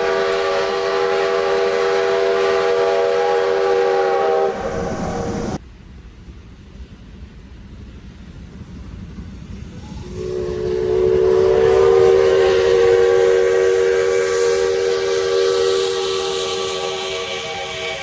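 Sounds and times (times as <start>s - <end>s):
steam locomotive whistle blast: 0.0s - 5.6s, 9.7s - 18.0s
oncoming train noise: 0.0s - 18.0s.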